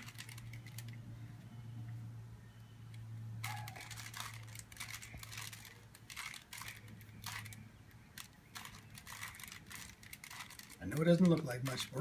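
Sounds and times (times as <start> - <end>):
plastic puzzle cube clicking: 3.4 - 12.0.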